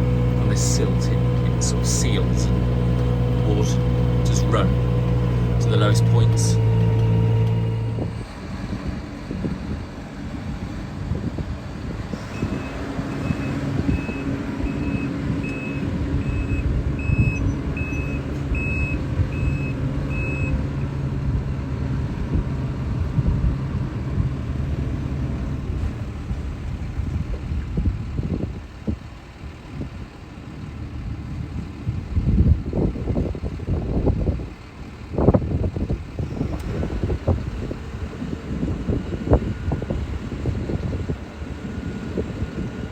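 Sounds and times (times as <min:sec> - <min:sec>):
harvester running under load: 0:00.0 - 0:42.9
machine warning beeps: 0:12.4 - 0:20.6.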